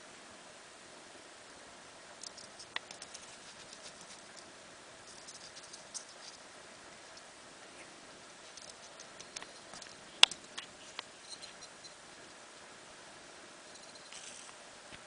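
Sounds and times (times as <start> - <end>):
solder crackling and ticking: 2.2 - 7.3, 8.4 - 12.4.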